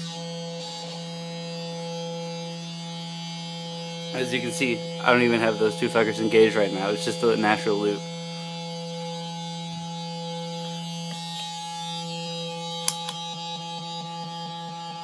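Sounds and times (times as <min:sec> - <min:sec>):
buzzy electronic feedback drone: 0:00.0 - 0:15.0
sharp click: 0:12.8 - 0:13.2.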